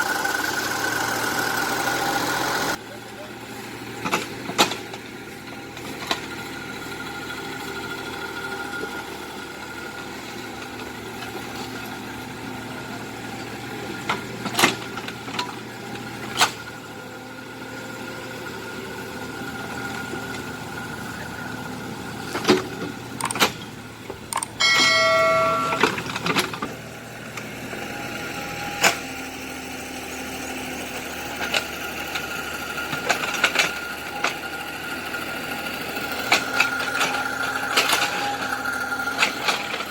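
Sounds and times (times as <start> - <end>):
excavator engine running: 0.0 - 39.9
loud pitched tone: 24.6 - 26.2.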